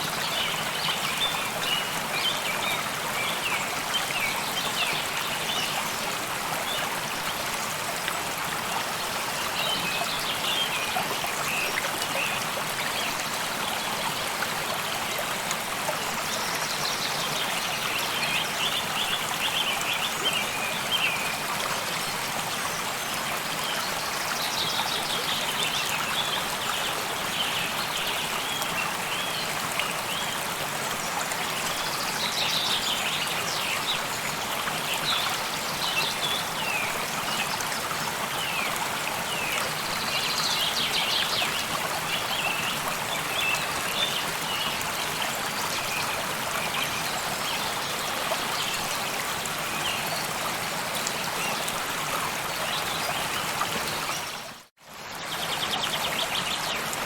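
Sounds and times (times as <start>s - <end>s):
stream running: 0.0s - 57.0s.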